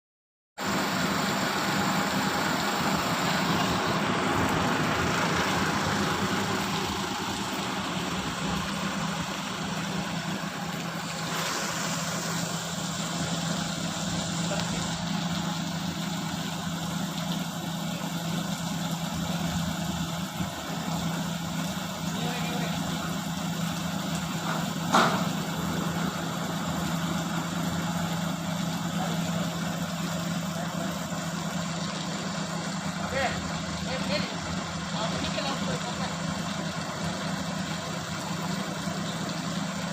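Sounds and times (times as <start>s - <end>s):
diesel engine idling: 0.6s - 39.9s.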